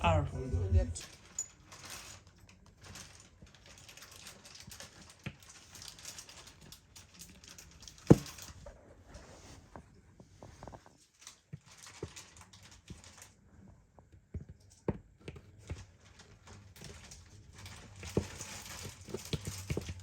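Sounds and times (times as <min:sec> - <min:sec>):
furniture parts rustling and clicking: 0:01.0 - 0:11.1, 0:14.4 - 0:20.0.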